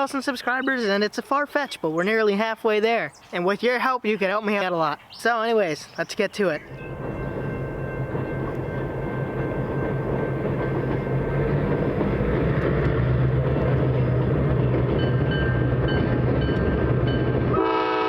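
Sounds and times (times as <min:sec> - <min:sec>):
diesel locomotive engine drone: 0:06.6 - 0:18.0.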